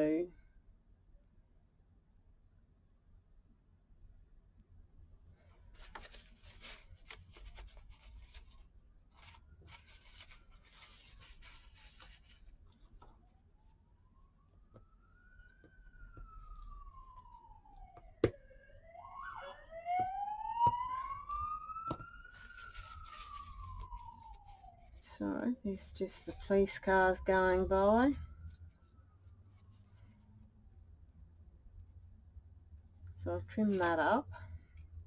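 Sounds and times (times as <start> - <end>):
paper rustling: 5.4 - 13.2, 20.6 - 24.7
police sirens wailing: 14.3 - 28.2.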